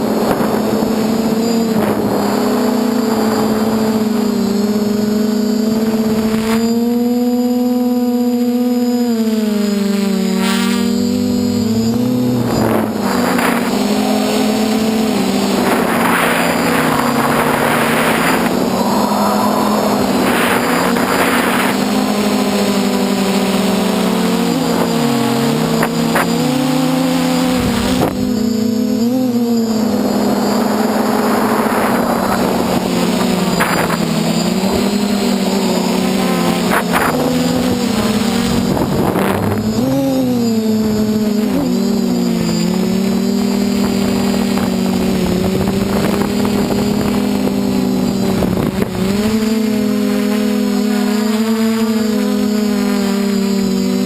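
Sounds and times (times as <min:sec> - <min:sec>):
quadcopter motors humming: 0:00.0 - 0:54.0
rushing air: 0:12.3 - 0:23.0, 0:29.3 - 0:39.8.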